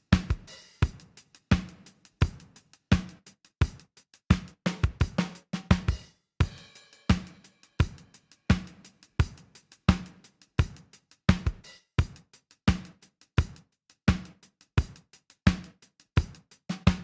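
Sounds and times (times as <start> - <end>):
hi-hat ticks: 0.0 - 17.0.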